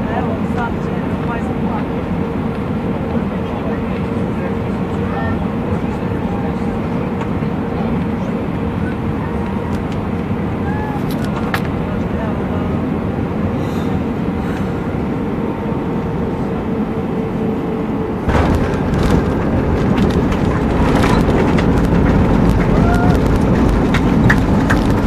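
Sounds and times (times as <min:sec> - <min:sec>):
airliner touchdown rumble: 0:00.0 - 0:25.0
jet cabin hum: 0:00.0 - 0:25.0
cabin rattling and clicks: 0:18.3 - 0:25.0.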